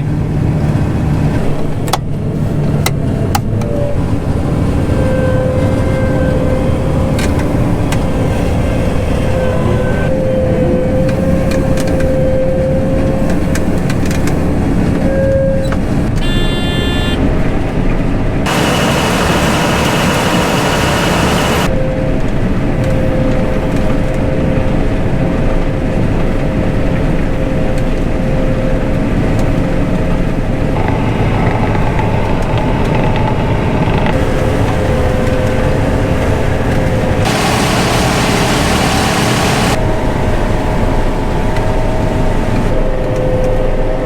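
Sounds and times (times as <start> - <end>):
combine harvester rumbling: 0.0 - 44.0
steady whine: 18.4 - 24.7, 26.5 - 44.0.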